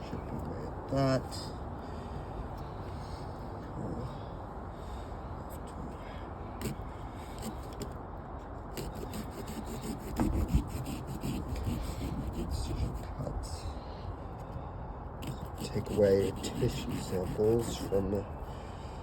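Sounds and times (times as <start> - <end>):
knife scraping pumpkin rind: 8.7 - 13.3, 15.2 - 18.3.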